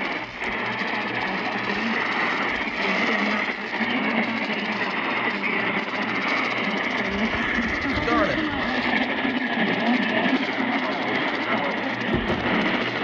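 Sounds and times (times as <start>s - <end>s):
radio static hiss: 6.8s - 9.2s
faint voice on radio: 7.1s - 9.0s.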